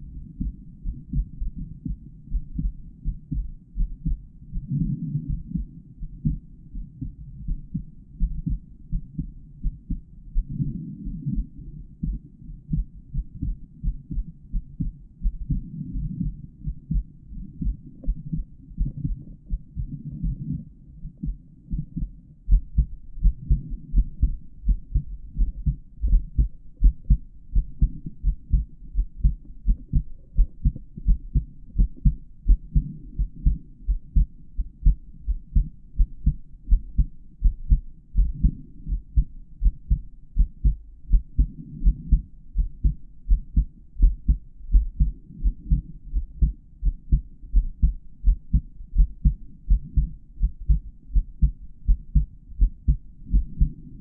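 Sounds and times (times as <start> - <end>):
heartbeat through stethoscope: 0.0 - 54.0.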